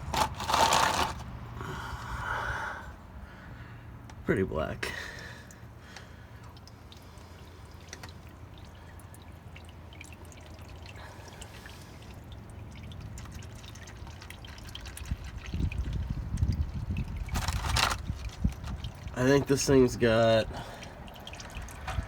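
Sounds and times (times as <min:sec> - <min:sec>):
oil trickling into pan: 0:05.0 - 0:22.0.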